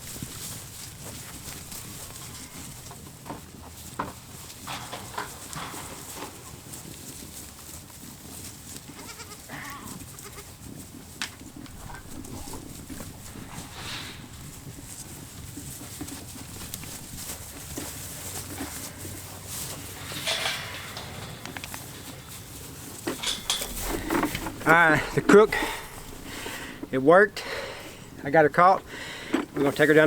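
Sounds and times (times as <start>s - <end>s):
goats bleating: 8.9s - 10.6s.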